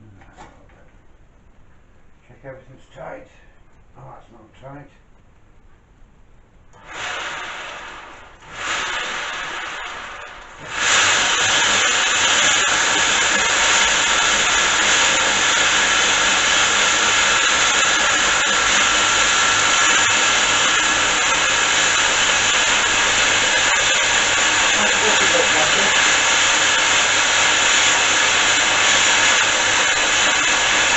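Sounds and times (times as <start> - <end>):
belt sander running: 6.8 - 30.9.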